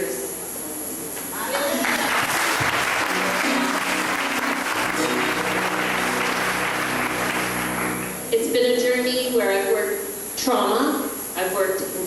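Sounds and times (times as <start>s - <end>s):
audience applauding: 1.6s - 8.3s
held musical chords: 2.8s - 9.2s.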